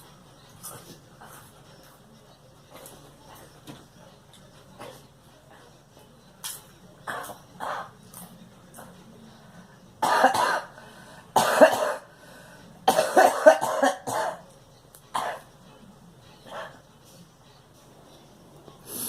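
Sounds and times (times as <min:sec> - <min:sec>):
person coughing harshly: 0:10.0 - 0:10.8, 0:11.4 - 0:12.1, 0:12.9 - 0:14.4.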